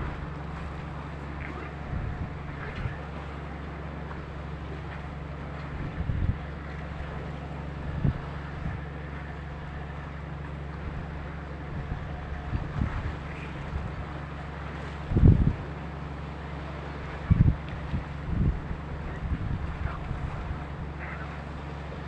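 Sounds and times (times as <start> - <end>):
wind buffeting microphone: 0.0 - 3.2, 4.4 - 21.0
boat engine drone: 0.0 - 22.0.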